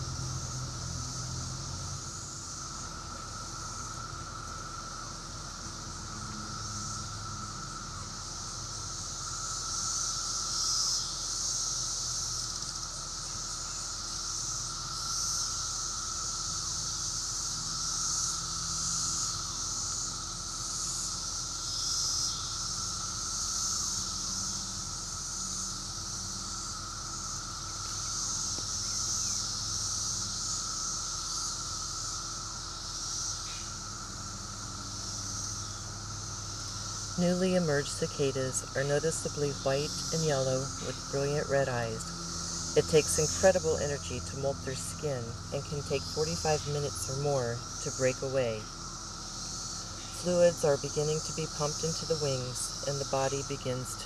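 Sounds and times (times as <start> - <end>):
insects buzzing: 0.0 - 54.0
low drone: 36.0 - 54.0.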